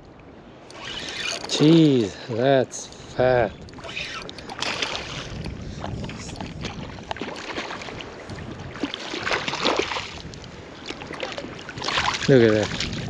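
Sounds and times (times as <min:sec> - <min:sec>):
wind rumble on microphone: 0:00.0 - 0:13.0
shallow water splashing: 0:00.6 - 0:13.0.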